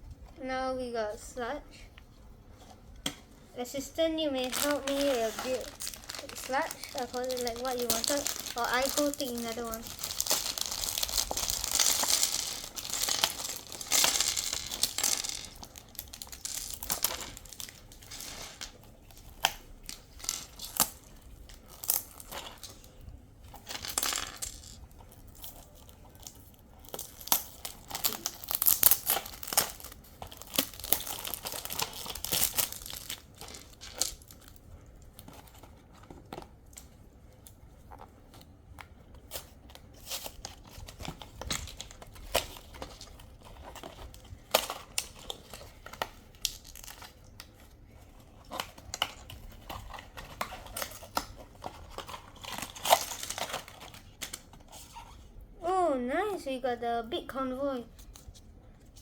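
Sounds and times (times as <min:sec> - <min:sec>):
plastic packaging crinkling and tearing: 0:03.7 - 0:55.3
plastic parts clicking and clattering: 0:04.4 - 0:34.6, 0:39.2 - 0:55.0.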